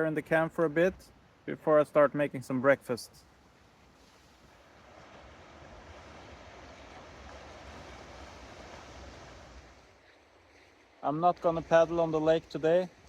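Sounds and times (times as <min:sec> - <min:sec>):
wind gust: 0:04.3 - 0:10.0.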